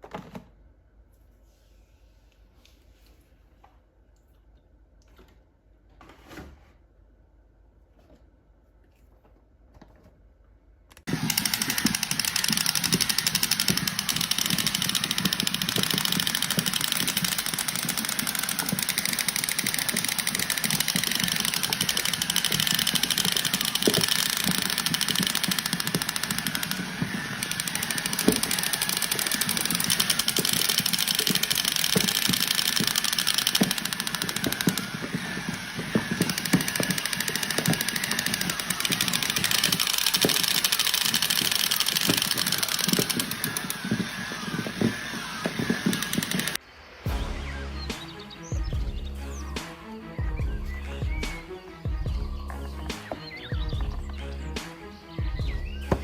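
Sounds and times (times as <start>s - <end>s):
loud rattling mechanical noise: 11.1s - 46.6s.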